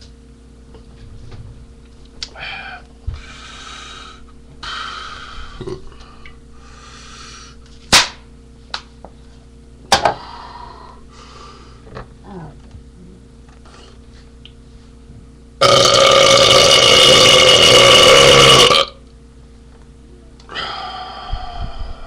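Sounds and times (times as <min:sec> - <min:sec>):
breathy hisses: 0:02.3 - 0:07.6.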